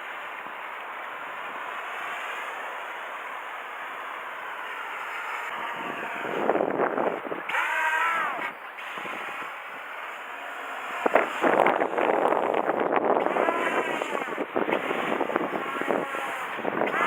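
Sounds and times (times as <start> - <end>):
electric aircraft motor whine: 0.1 - 17.0
wind buffeting microphone: 5.3 - 9.7, 10.6 - 17.0.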